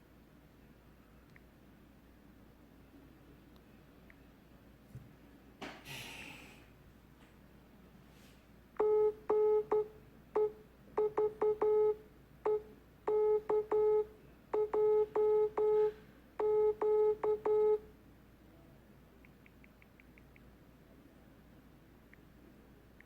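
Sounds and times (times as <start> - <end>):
morse code beeps: 8.8 - 17.8.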